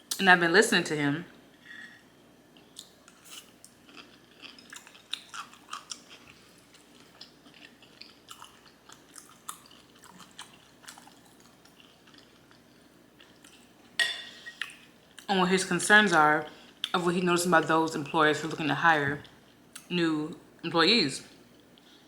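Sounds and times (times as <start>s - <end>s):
person chewing: 2.6s - 13.8s.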